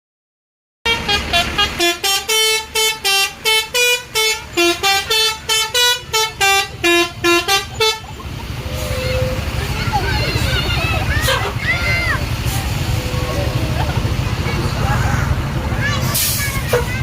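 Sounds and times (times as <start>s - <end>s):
musical bus air horn: 0.9s - 11.6s.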